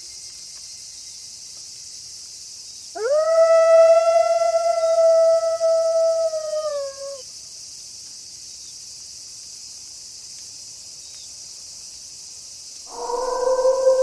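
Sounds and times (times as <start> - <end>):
crickets chirping: 0.0 - 14.0
wolf howling: 3.0 - 7.2, 12.9 - 14.0.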